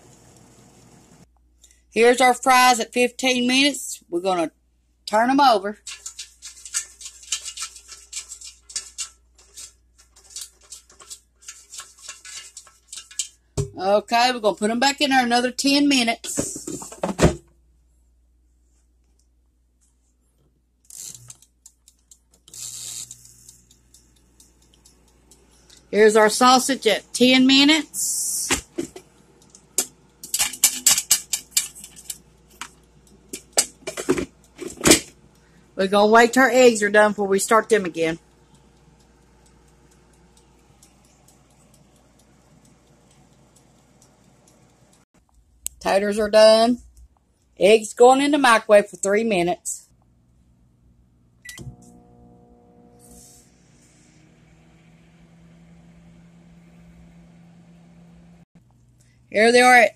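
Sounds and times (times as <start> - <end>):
fries rustling in fryer basket: 5.8 - 13.4.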